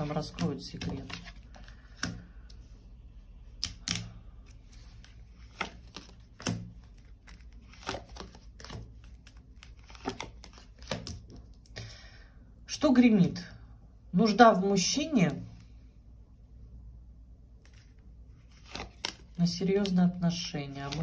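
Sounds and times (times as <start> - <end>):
cards snapping and tapping: 3.6 - 4.1, 5.4 - 11.4
faint card rustle: 4.5 - 11.2, 17.6 - 21.0.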